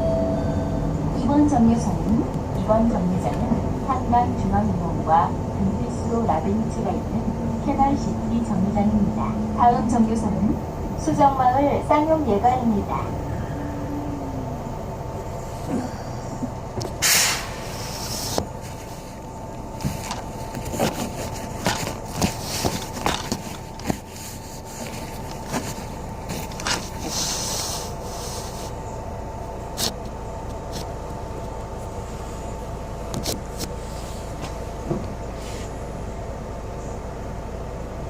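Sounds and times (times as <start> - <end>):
bus engine and road drone: 0.0 - 38.0
air brake hiss: 17.0 - 18.4.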